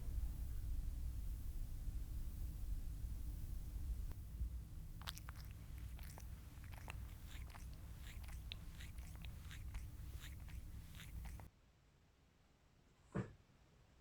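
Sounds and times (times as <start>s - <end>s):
low steady hum: 0.0s - 11.5s
cat chewing food: 4.1s - 11.5s.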